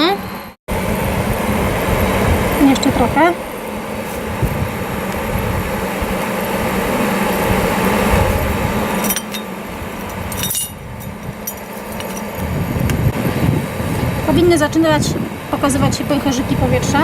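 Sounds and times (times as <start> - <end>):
low hum: 0.0 - 17.0
utensils clinking: 9.0 - 12.4.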